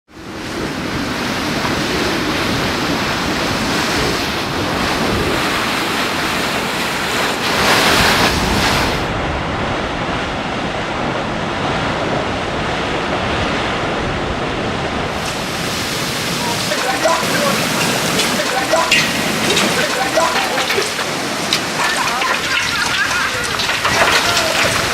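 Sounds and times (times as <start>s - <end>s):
water jet spraying and splashing: 15.1s - 24.9s.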